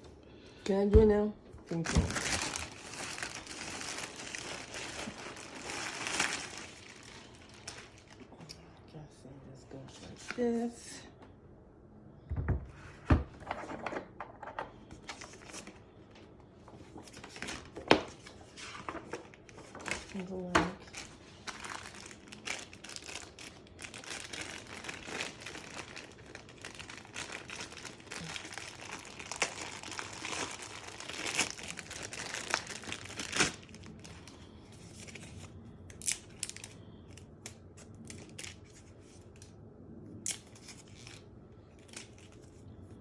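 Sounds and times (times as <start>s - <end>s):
packaging crinkling and rustling: 1.7s - 8.4s, 14.9s - 39.6s, 40.3s - 42.8s.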